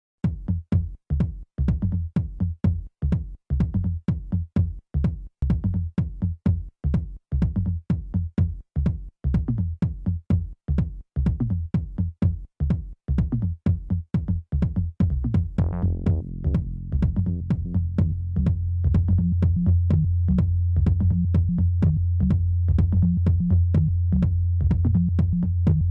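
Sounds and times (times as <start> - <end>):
kick drum beat: 0.2 - 25.9
electronic dance music: 15.6 - 18.1.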